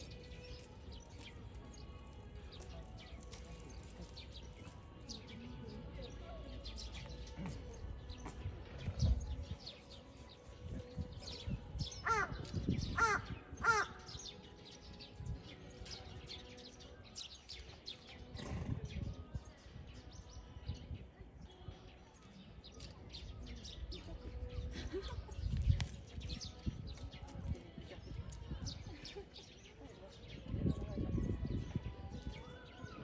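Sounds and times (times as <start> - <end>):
crow cawing: 12.0 - 12.4, 13.0 - 14.2.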